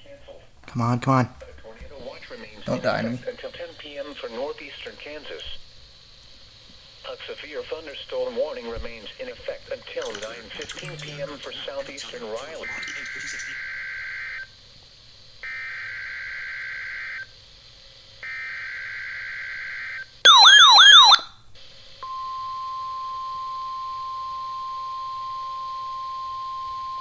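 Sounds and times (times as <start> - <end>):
buzzy digital data bursts: 9.9 - 14.5
steady warning alarm tone: 10.8 - 14.6, 15.4 - 17.3, 18.2 - 21.3
warbling alert tone: 20.3 - 21.2.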